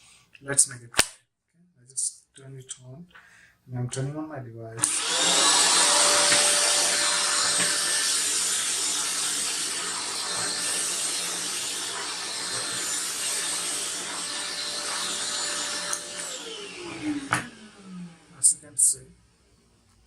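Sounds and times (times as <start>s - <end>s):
vacuum cleaner running: 4.8s - 18.7s.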